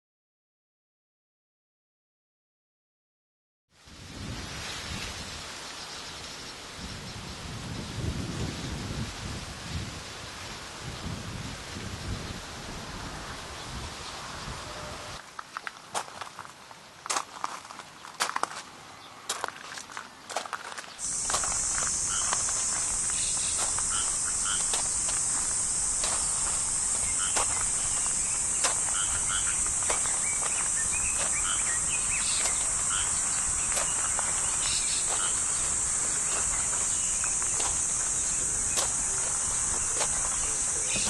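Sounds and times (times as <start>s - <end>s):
high-pitched insect drone: 21.0s - 41.0s.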